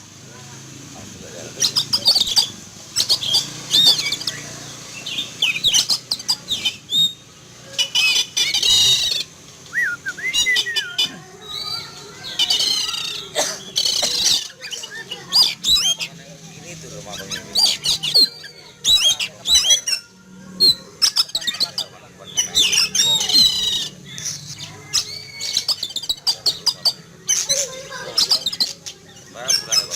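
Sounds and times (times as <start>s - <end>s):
bird singing whistles and chatter: 1.4s - 29.9s.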